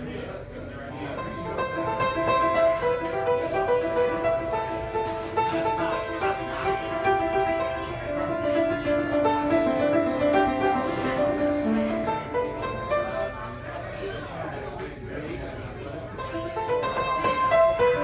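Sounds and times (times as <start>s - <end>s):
solo piano playing: 1.2s - 13.7s, 16.2s - 18.0s.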